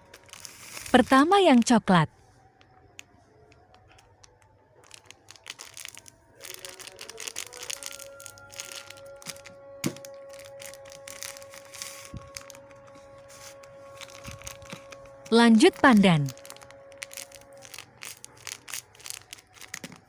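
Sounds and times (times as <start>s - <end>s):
plastic crinkling: 0.0s - 20.0s
steady musical tone: 8.3s - 18.8s.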